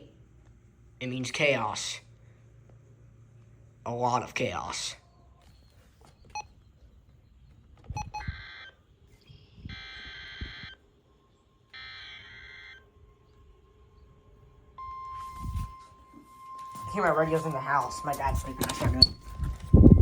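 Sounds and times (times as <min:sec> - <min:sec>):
steady warning alarm tone: 0:08.0 - 0:20.0
screeching digital header tones: 0:09.6 - 0:10.8, 0:11.8 - 0:13.0.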